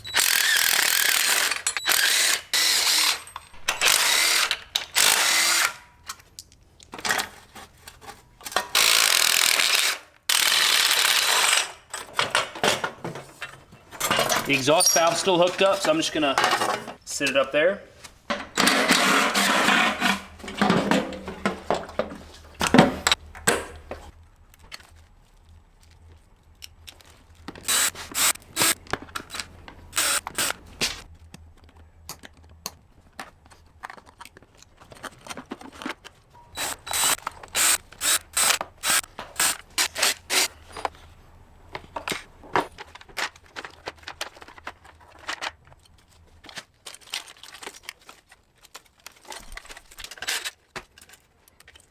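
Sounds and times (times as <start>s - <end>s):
ratchet wrench clicking: 0.0s - 5.8s, 8.7s - 11.6s, 27.6s - 30.6s, 36.6s - 40.5s
metal parts clattering and scraping: 0.0s - 25.0s, 26.6s - 31.1s, 33.2s - 51.9s.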